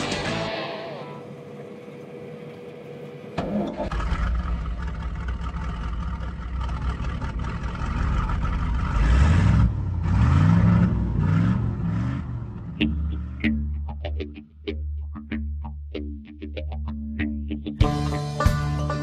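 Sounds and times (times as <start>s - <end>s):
farm machine engine rumbling: 0.0s - 9.0s.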